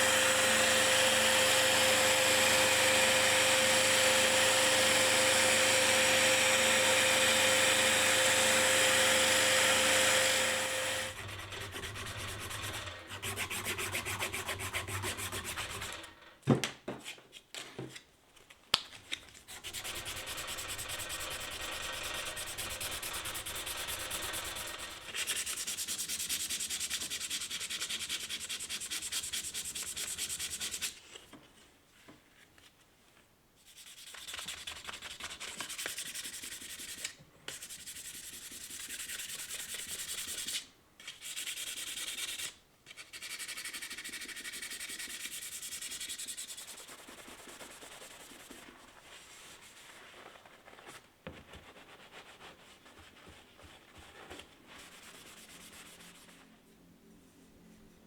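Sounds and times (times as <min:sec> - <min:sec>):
sandpaper rubbing on knife: 0:11.0 - 0:16.0, 0:19.5 - 0:31.0, 0:33.6 - 0:49.9.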